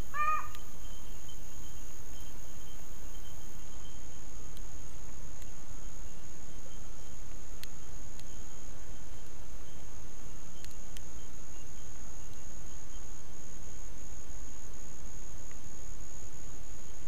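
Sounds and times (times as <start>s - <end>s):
crickets trilling: 0.0s - 17.0s
faint clicks: 0.4s - 0.7s, 10.6s - 11.1s.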